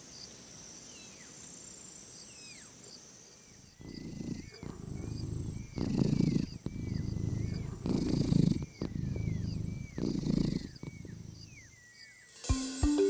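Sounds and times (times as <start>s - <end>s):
small birds chirping: 0.0s - 12.4s
serval purring: 3.6s - 11.9s
mallet instrument music: 12.5s - 13.0s.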